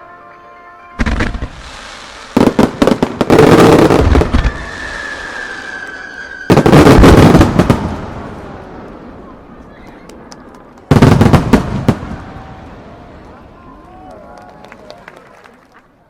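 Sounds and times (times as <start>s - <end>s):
fireworks bangs and crackling: 1.0s - 13.5s
firework whistle: 3.3s - 7.3s.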